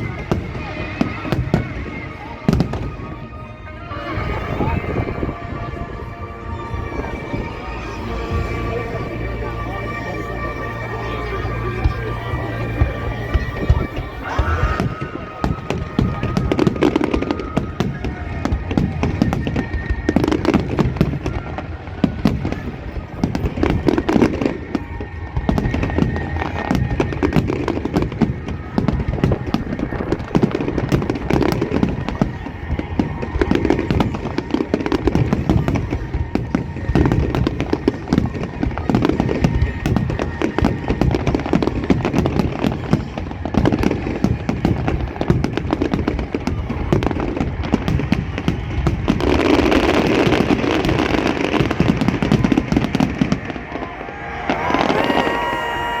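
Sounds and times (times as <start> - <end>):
fireworks bangs and crackles: 0.0 - 56.0
low firework booms: 11.8 - 53.9.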